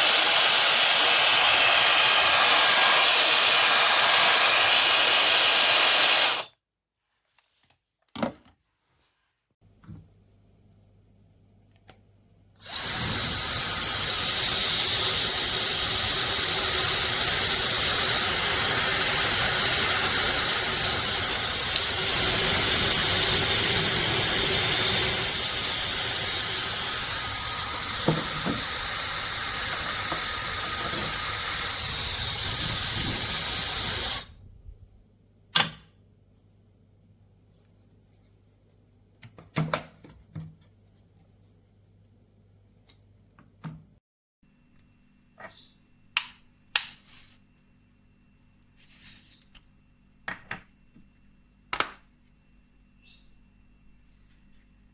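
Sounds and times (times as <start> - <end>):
hair dryer blowing: 0.0 - 6.5, 12.7 - 34.3.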